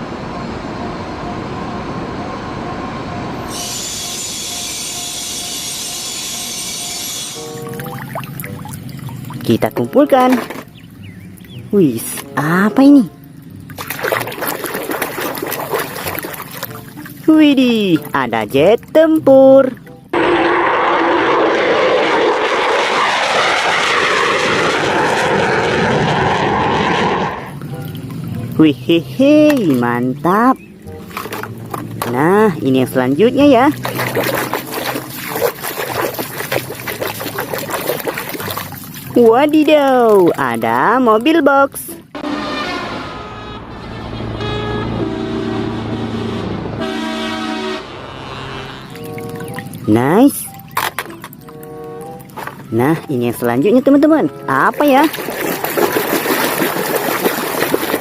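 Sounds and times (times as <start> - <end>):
train rumbling on rails: 0.0 - 7.7, 42.0 - 48.9
airplane engine drone: 0.0 - 17.3, 19.8 - 40.6, 41.9 - 58.0.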